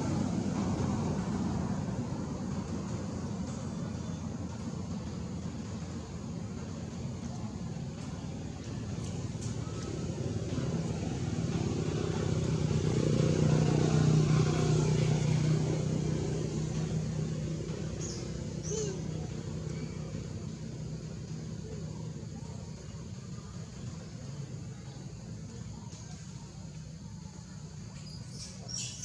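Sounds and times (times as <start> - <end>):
vehicle engine passing by: 9.6 - 20.4.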